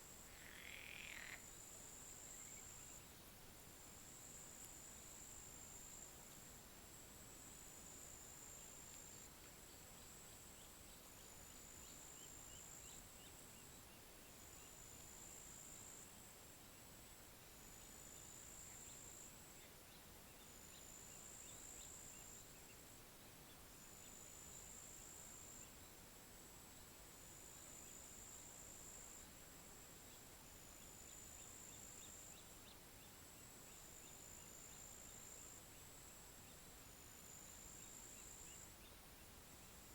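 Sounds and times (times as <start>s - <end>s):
soft hiss: 0.0s - 39.9s
insect trilling: 0.3s - 1.5s.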